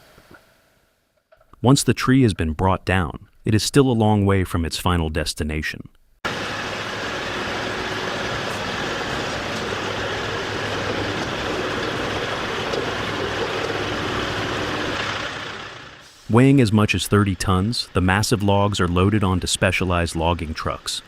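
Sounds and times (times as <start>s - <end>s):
heavy machinery running: 6.3s - 20.4s.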